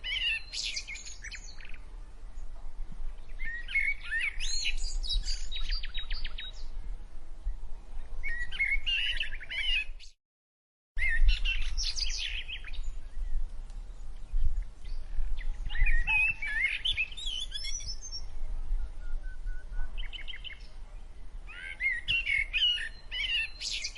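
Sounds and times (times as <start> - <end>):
small birds chirping and trilling: 0.0 - 10.2, 11.0 - 23.9.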